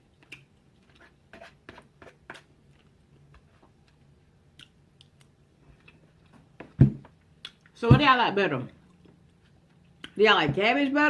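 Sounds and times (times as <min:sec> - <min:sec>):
person chewing: 0:02.0 - 0:06.5, 0:07.4 - 0:07.8, 0:08.8 - 0:10.2.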